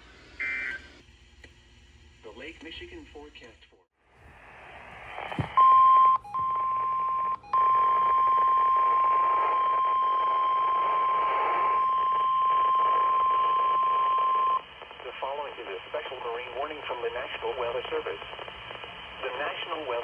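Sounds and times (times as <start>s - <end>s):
radio static: 4.3s - 5.6s, 12.4s - 20.0s
weather radio alarm tone: 5.2s - 14.6s.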